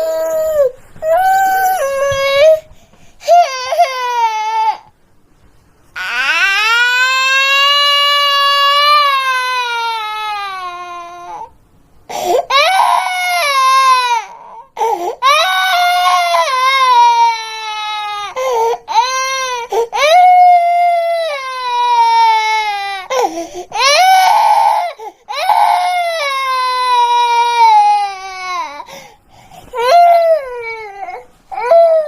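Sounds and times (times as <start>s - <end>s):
high-pitched wailing cries: 12.4s - 23.2s.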